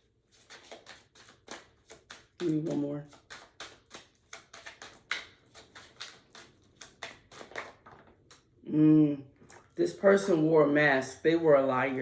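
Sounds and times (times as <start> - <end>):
cards being shuffled: 0.2 - 8.5.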